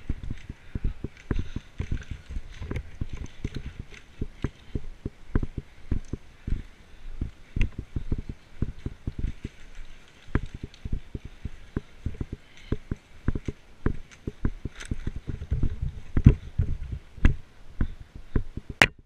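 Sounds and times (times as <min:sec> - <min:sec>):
sharp clicks: 0:00.2 - 0:09.2
low thuds and knocks: 0:10.3 - 0:19.0.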